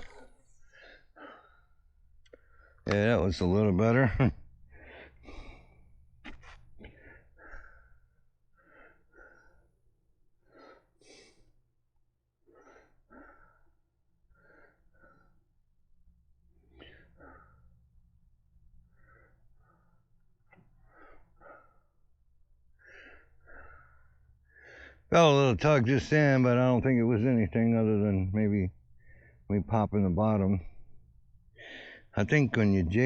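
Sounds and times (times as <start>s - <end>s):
wheezy breathing: 0.0s - 2.8s, 4.7s - 11.7s, 12.4s - 15.6s, 16.5s - 18.0s, 18.8s - 25.1s, 31.5s - 32.2s.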